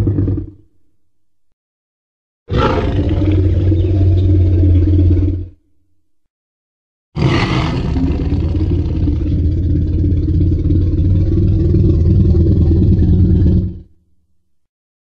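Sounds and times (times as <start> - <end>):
deep rumbling dinosaur roar: 0.0 - 0.6, 2.5 - 5.6, 7.2 - 14.0.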